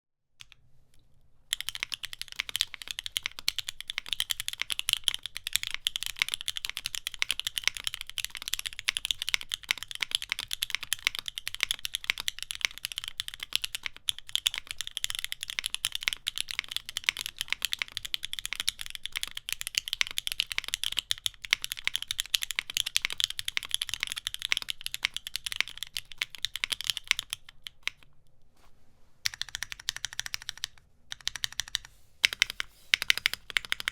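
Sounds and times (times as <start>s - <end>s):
clacky mechanical keyboard typing: 1.5s - 28.0s, 29.3s - 33.9s.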